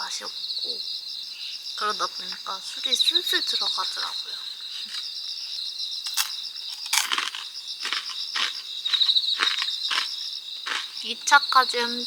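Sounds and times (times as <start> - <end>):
crickets chirping: 0.0 - 12.0
crunchy chewing: 6.0 - 11.3.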